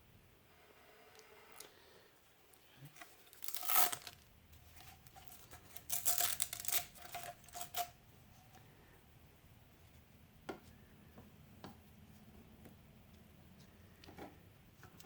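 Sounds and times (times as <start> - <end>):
velcro strap ripping open: 3.2 - 4.3, 5.3 - 7.9.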